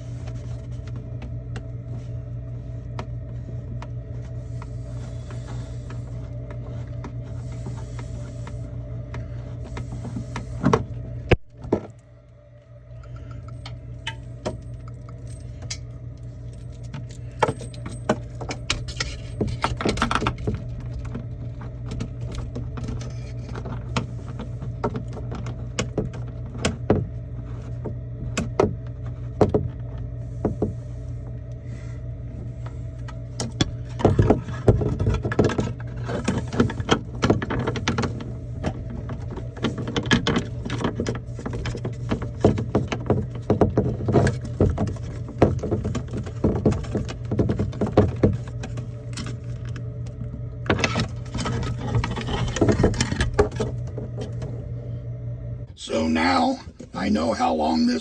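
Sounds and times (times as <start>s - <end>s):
steady low hum: 0.0s - 58.0s
plumbing fittings and tools rattling: 16.5s - 26.9s, 33.4s - 54.5s.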